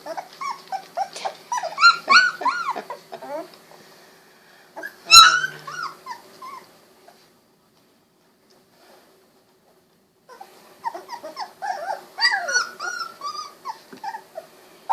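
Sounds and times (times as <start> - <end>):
puppies whimpering and squeaking: 0.0 - 3.6, 4.8 - 7.3, 10.3 - 14.9.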